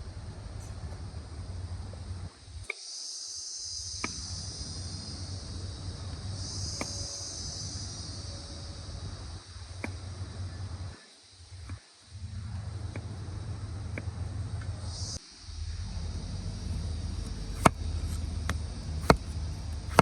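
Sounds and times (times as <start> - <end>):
insects chirring: 0.9 - 20.0
low steady hum: 12.1 - 20.0.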